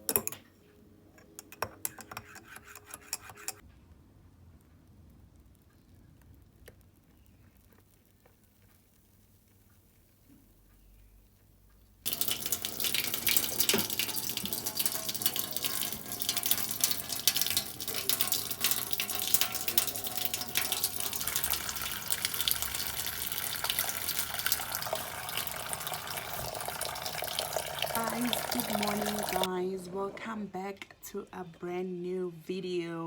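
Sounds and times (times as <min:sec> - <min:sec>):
water running into sink: 0:12.1 - 0:29.5.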